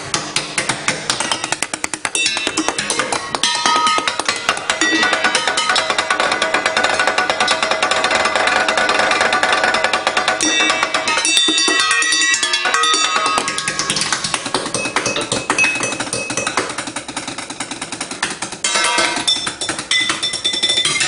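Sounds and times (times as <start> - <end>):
chopsticks drumming on pots and pans: 0.0 - 21.0
struck metal ringing: 1.2 - 14.0.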